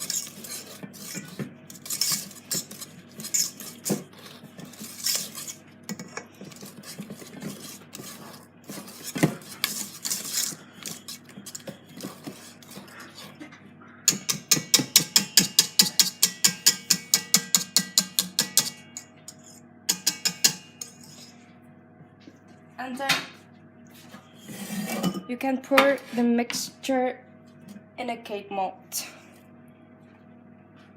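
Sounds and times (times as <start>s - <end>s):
utensil beating batter in bowl: 0.0s - 13.4s, 14.1s - 21.4s.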